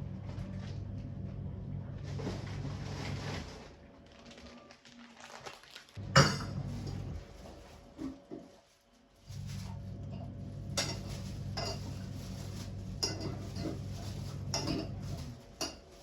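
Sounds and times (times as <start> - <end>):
steady low hum: 0.0 - 3.4, 6.0 - 8.2, 9.2 - 15.8.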